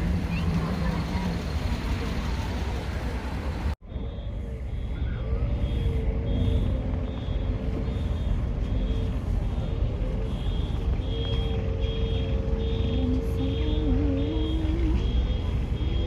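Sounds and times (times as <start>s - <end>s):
vehicle running rumble: 0.0s - 16.0s
high electronic warning beep: 3.8s - 16.0s.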